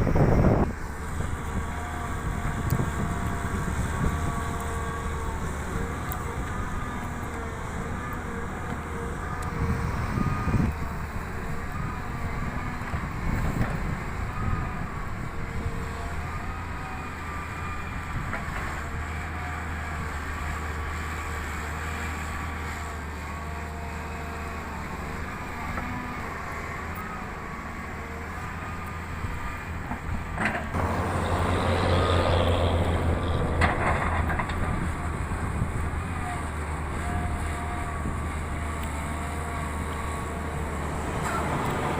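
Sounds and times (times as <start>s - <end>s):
diesel engine running: 0.0s - 41.9s
hydraulic whine: 25.6s - 41.9s.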